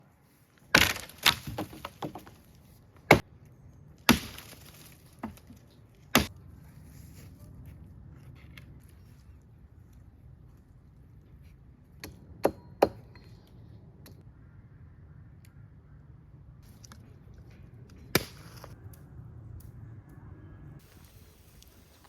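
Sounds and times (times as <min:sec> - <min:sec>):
small wood cracks: 0:00.6 - 0:03.2, 0:04.0 - 0:06.4
wood chopping knocks: 0:00.8 - 0:02.4.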